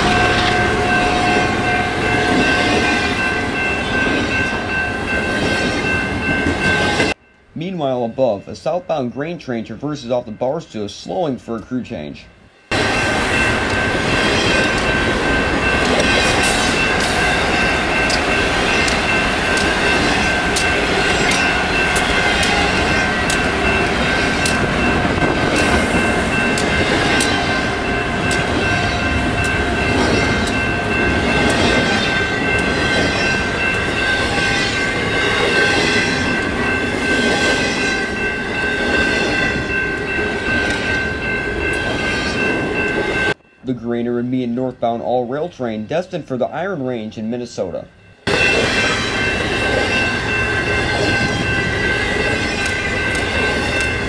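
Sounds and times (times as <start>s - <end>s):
high squeal from train cars: 12.8s - 43.4s, 48.3s - 54.0s
train wheels clicking on rail joints: 12.8s - 43.4s, 48.1s - 54.0s.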